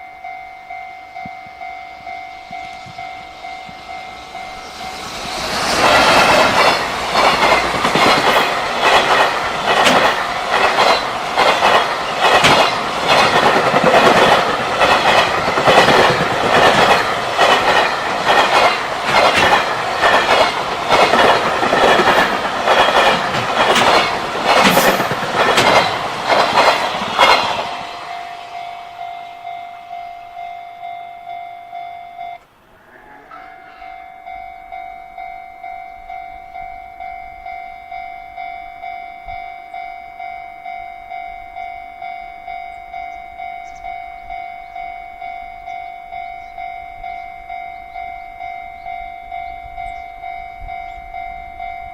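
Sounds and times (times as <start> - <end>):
level-crossing warning bell: 0.0 - 51.9
train wheels clattering: 1.2 - 30.6.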